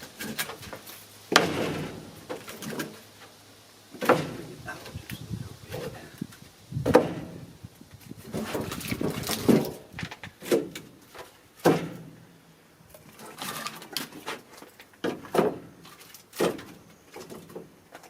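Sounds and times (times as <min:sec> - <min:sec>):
firewood knocking together: 0:04.0 - 0:04.5, 0:06.8 - 0:07.4, 0:08.3 - 0:12.1, 0:13.4 - 0:18.0.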